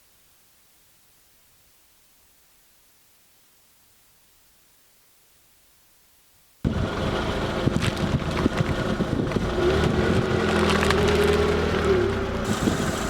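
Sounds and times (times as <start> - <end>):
car engine running: 6.6 - 13.0
toy crackling under a tyre: 10.1 - 11.7.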